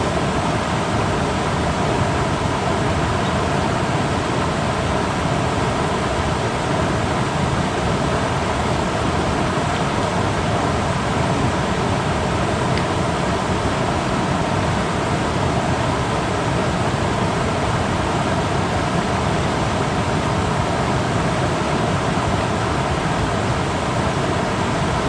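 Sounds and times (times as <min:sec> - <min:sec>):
creek water rushing: 0:00.0 - 0:25.0.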